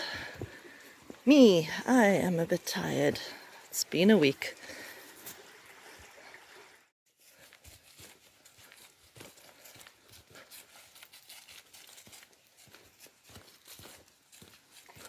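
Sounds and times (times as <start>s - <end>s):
footsteps crunching on trail: 0.0s - 1.3s, 7.1s - 15.0s.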